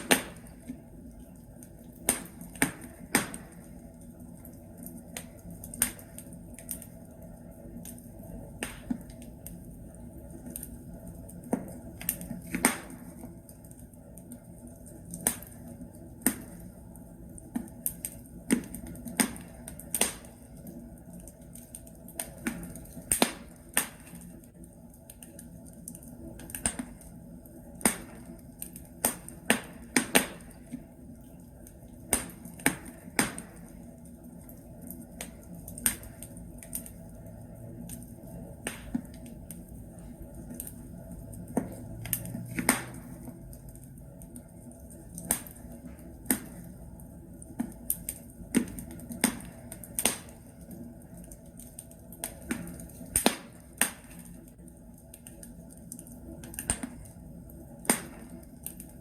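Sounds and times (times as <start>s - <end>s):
fire crackling and popping: 0.0s - 59.0s.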